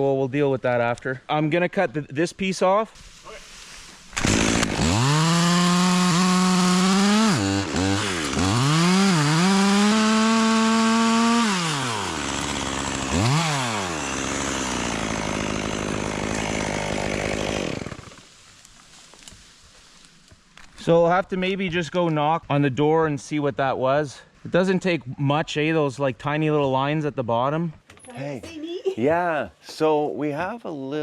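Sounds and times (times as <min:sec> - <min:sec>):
chainsaw cutting wood: 0:04.1 - 0:18.5.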